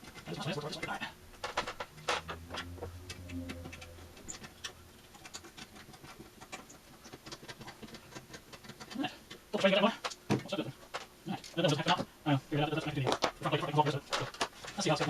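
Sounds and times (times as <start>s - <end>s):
low hum: 0.3s - 6.1s.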